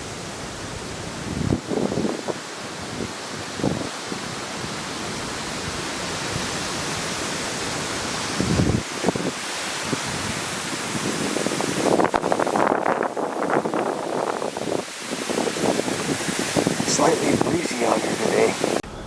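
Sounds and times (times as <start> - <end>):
light breeze hiss: 0.0 - 19.0
wind buffeting microphone: 0.0 - 19.0.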